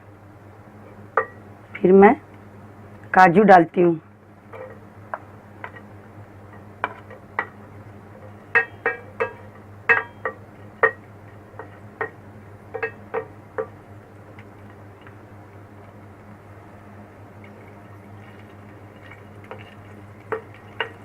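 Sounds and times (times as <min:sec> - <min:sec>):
low steady hum: 0:00.0 - 0:21.0
spoon clinking against metal pan: 0:08.5 - 0:11.0.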